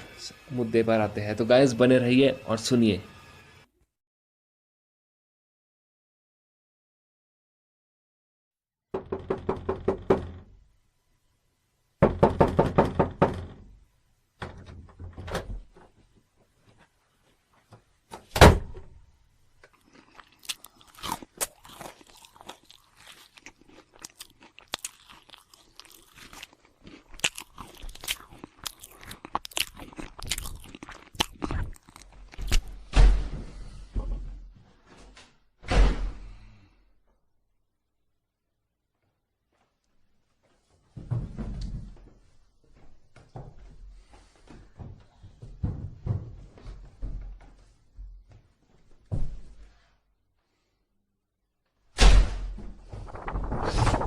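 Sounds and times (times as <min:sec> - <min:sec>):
loud thud: 0:52.0 - 0:54.0.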